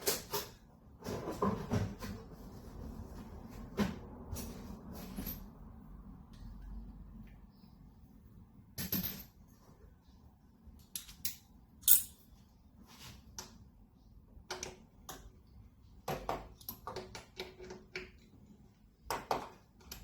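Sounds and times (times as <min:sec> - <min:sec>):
socket wrench clicking on metal: 0:10.8 - 0:12.2.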